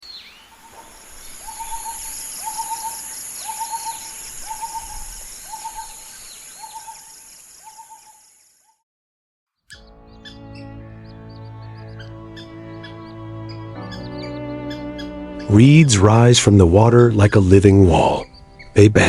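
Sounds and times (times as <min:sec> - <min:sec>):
high chirping calls: 0:00.0 - 0:08.3, 0:09.7 - 0:19.0
bird hooting call: 0:00.6 - 0:08.2, 0:11.0 - 0:16.0, 0:17.7 - 0:18.8.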